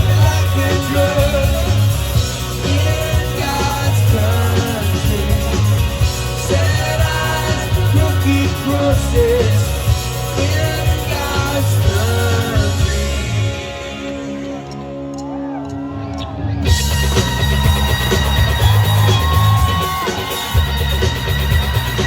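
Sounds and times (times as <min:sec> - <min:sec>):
person singing: 0:00.0 - 0:15.5
live rock band: 0:00.0 - 0:22.0.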